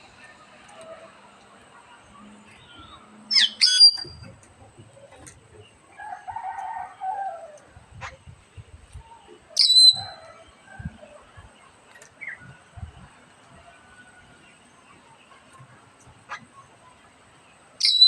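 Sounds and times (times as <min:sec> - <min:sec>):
bird sharp high calls: 0:02.6 - 0:04.3, 0:09.6 - 0:10.2, 0:17.8 - 0:18.0.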